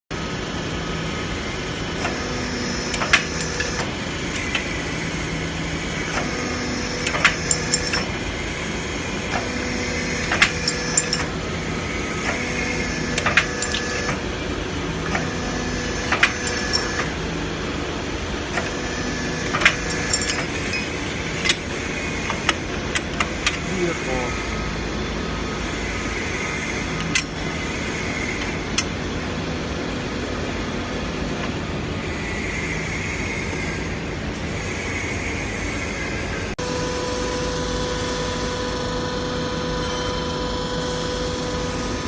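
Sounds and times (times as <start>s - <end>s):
hydraulic pump humming: 1.1s - 31.6s
metallic clicks and clanks: 2.9s - 4.6s, 7.0s - 8.2s, 10.2s - 11.3s, 13.2s - 14.3s, 16.0s - 17.2s, 19.4s - 23.7s, 27.0s - 27.4s.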